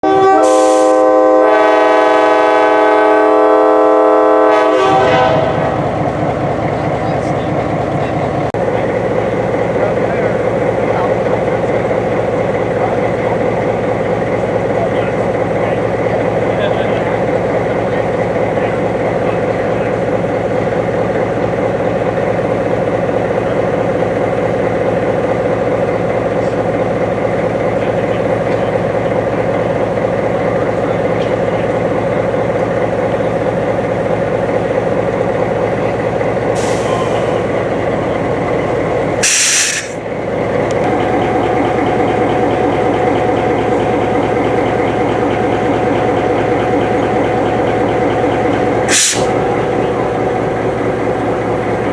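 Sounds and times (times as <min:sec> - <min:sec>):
heavy engine idling: 0:00.0 - 0:51.9
compressed air hiss: 0:39.2 - 0:40.0, 0:48.9 - 0:49.4.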